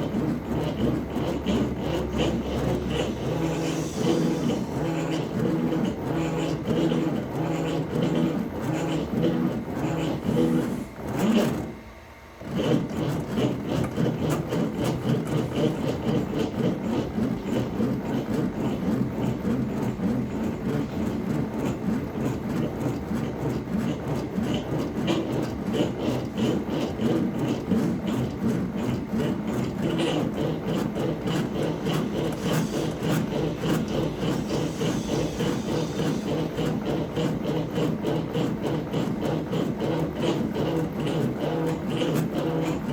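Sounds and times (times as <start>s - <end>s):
woodworking machine running: 0.0s - 8.3s, 20.6s - 42.9s.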